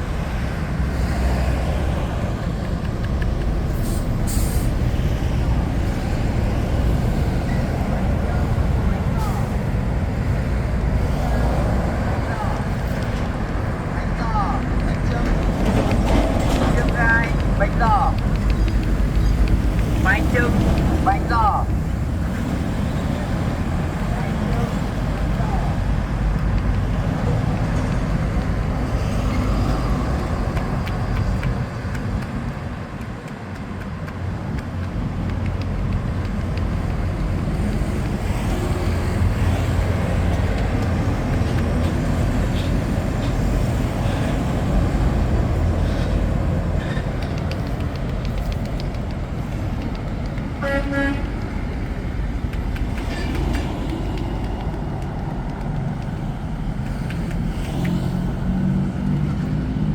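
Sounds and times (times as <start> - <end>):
road traffic: 0.0 - 59.9
car horn honk: 50.6 - 51.3.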